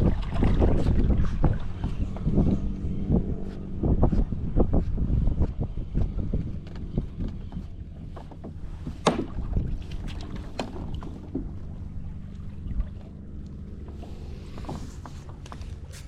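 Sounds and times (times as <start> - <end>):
water slapping: 0.0 - 4.7, 5.4 - 16.0
wind buffeting microphone: 0.0 - 16.0
knocks on kayak: 8.3 - 9.6.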